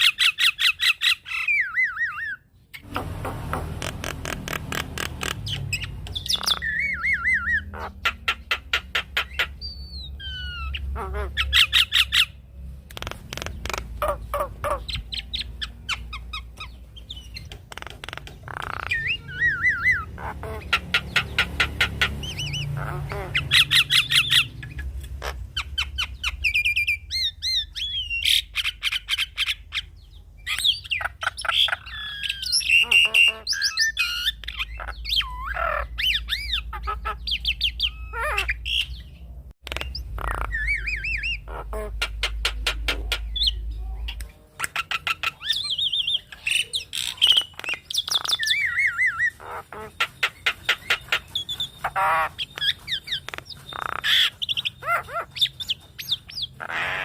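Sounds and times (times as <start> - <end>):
bird singing whistles and clicks: 4.5 - 7.5, 30.5 - 34.9, 42.0 - 49.4, 50.1 - 56.5.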